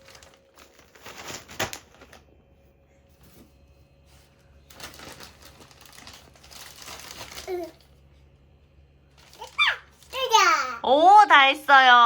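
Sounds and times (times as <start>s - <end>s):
soft rustling of plastic bag: 0.0s - 2.2s, 4.0s - 8.0s, 9.1s - 10.4s.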